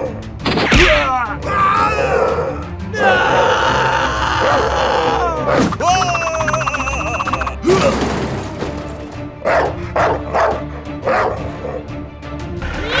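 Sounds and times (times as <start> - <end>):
background music with held notes: 0.0 - 13.0
cartoon sound effect bursts: 5.6 - 7.6
wavering pitched warble: 5.8 - 7.6.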